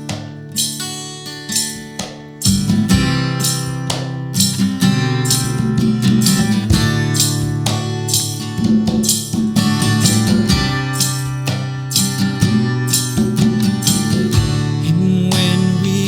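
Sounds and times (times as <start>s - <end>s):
strummed guitar: 0.0s - 16.0s
drum kit with cymbal hits: 6.2s - 16.0s.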